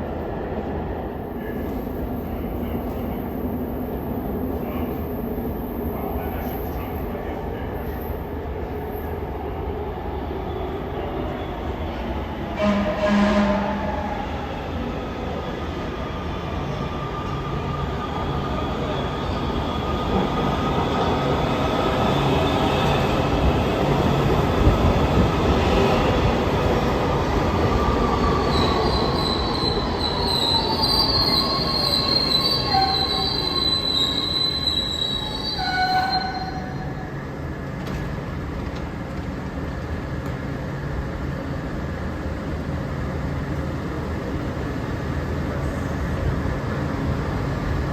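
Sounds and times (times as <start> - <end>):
low hum of standing train: 0.0 - 47.9
brake and wheel squeal: 28.5 - 37.0.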